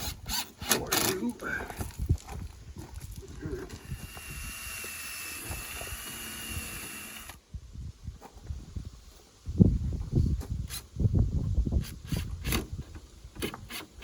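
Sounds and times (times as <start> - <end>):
power drill whining: 3.7 - 7.4.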